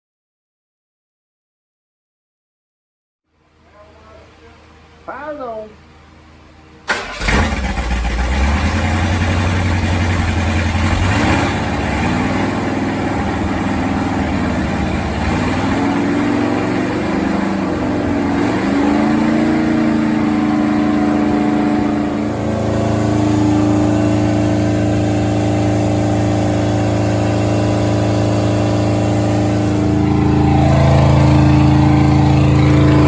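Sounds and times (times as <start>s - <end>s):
engine idling: 6.8s - 33.0s.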